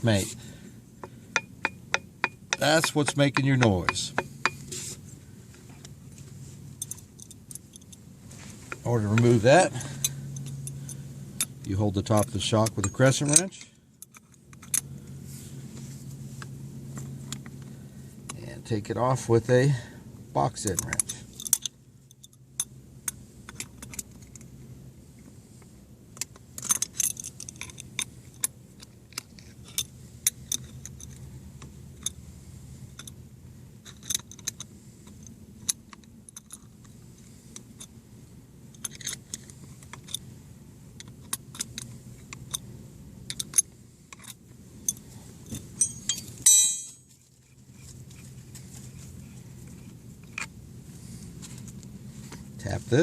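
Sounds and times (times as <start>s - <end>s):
steady low hum: 0.0s - 53.0s
wrenches clicking on metal: 1.4s - 4.6s
metal clank: 45.6s - 47.1s.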